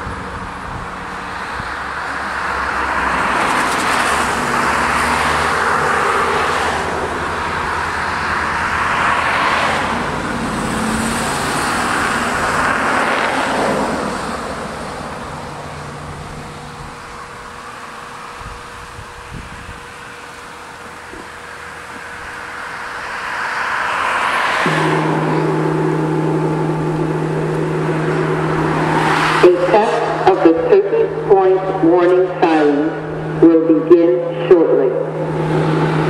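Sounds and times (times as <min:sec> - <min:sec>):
cars passing: 0:00.0 - 0:36.0
low engine hum: 0:00.0 - 0:36.0.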